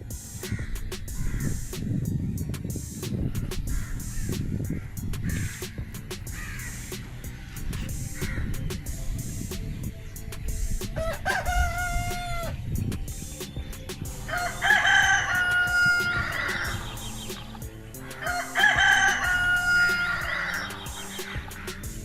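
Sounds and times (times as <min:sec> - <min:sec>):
background music: 0:00.0 - 0:22.0
rooster crowing: 0:11.0 - 0:12.6, 0:14.3 - 0:17.1, 0:18.2 - 0:20.8.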